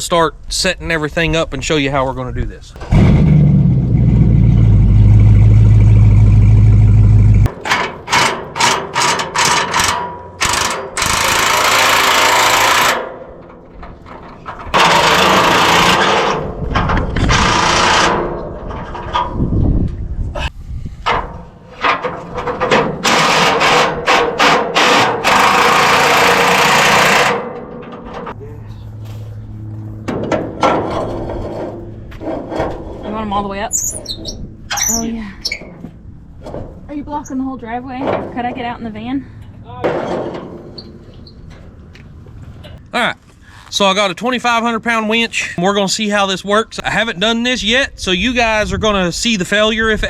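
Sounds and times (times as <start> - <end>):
vehicle engine running: 2.9 - 7.5, 28.4 - 30.6.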